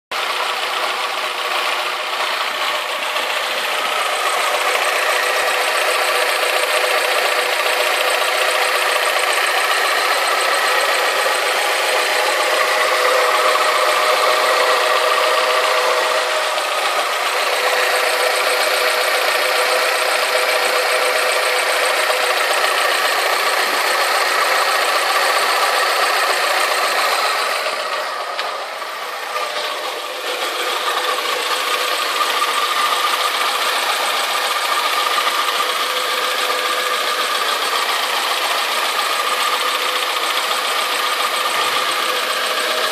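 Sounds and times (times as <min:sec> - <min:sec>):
car engine idling: 0:00.1 - 0:42.9.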